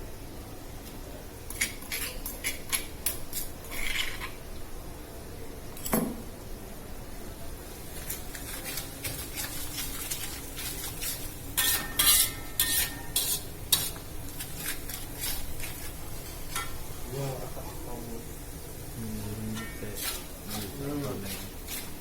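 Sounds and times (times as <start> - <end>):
utensil scraping frying pan: 1.5 - 4.4, 7.8 - 17.1, 19.2 - 22.0
oil sizzling: 7.4 - 22.0
utensil clanking against pan: 8.3 - 16.9, 19.5 - 22.0.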